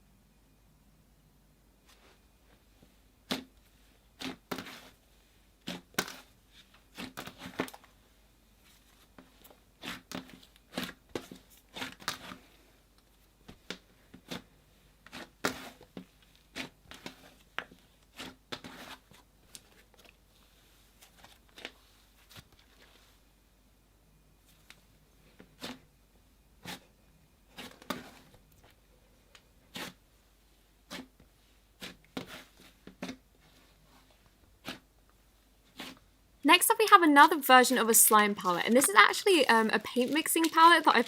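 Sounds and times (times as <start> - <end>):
slime crackling as kneaded by hand: 3.2 - 5.0, 5.6 - 8.0, 8.7 - 12.5, 13.4 - 23.0, 30.8 - 35.0, 35.6 - 36.1, 38.3 - 41.0.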